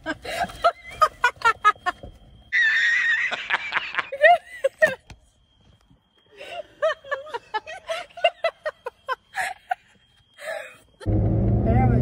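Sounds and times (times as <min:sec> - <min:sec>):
person giggling: 0:03.2 - 0:05.1.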